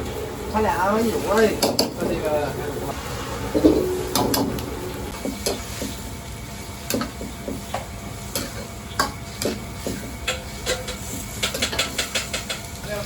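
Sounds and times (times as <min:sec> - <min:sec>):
food sizzling in a wok: 0:00.0 - 0:13.0
ladle knocking and scraping wok: 0:06.9 - 0:12.8.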